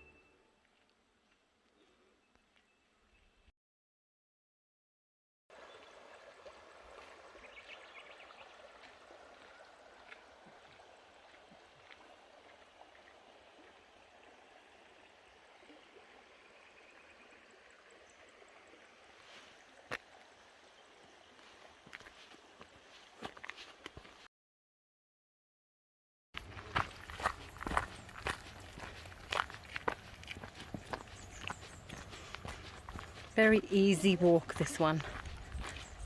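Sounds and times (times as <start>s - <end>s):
creek water running: 5.5s - 24.3s, 26.4s - 36.0s.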